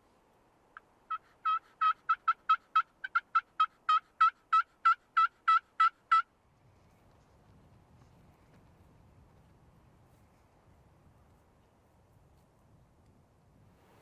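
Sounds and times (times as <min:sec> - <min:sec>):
turkey yelps: 0:00.8 - 0:06.3.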